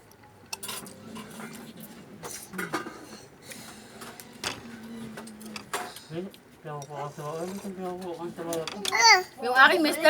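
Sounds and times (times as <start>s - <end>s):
cutlery clinking on plate: 8.5s - 9.0s.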